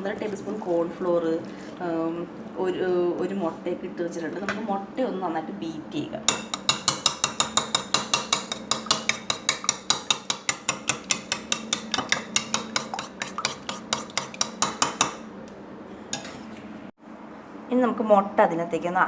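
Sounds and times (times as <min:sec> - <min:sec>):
utensil clicking against bowl: 0:06.3 - 0:15.2.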